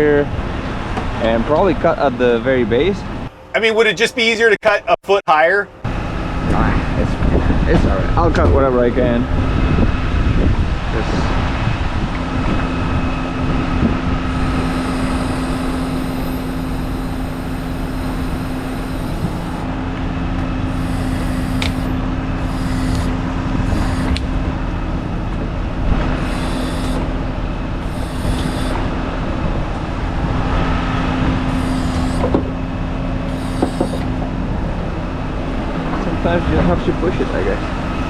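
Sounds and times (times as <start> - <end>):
heavy equipment engine running: 3.0 - 38.0
short bursts of hiss: 14.8 - 19.6.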